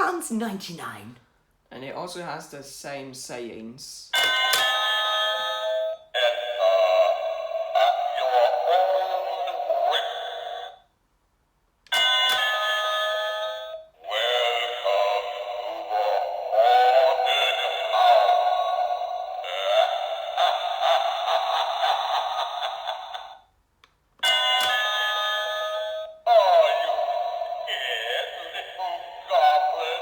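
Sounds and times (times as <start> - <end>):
recorded spooky voice: 0.0 - 1.2, 5.4 - 10.8, 13.5 - 23.3, 24.3 - 30.0.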